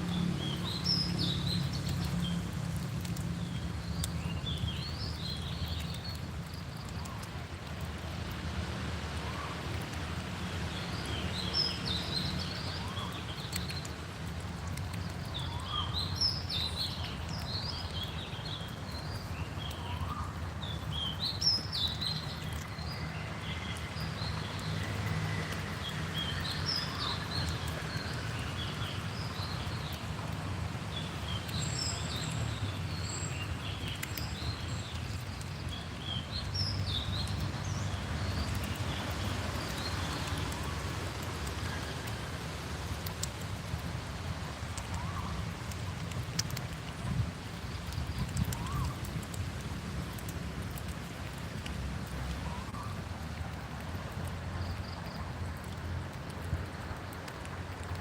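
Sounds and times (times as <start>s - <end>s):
wind rumble on microphone: 43.8s - 57.7s.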